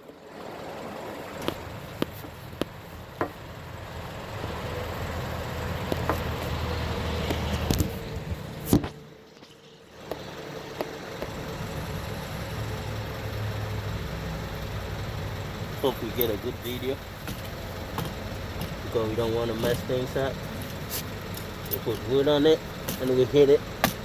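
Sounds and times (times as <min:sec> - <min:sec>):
low vehicle-like hum: 0:00.0 - 0:24.0
hammer striking wood: 0:23.8 - 0:24.0.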